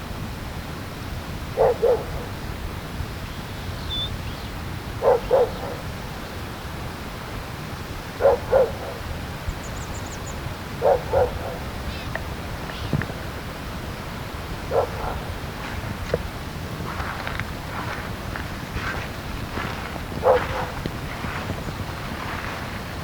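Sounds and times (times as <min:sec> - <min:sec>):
dog barking: 0:01.6 - 0:02.4, 0:05.0 - 0:05.9, 0:08.2 - 0:09.1, 0:10.8 - 0:11.8, 0:14.6 - 0:15.9, 0:19.6 - 0:21.5
faint high bird trill: 0:03.3 - 0:04.5.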